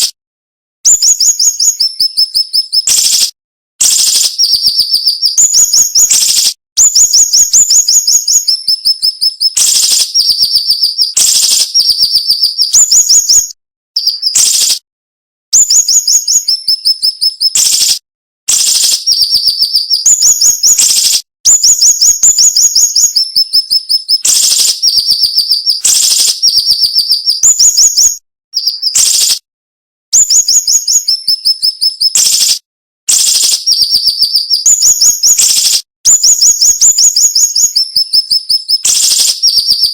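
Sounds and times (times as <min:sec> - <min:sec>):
bird singing rapid trills: 0:00.9 - 0:14.8, 0:15.6 - 0:29.4, 0:30.2 - 0:39.9.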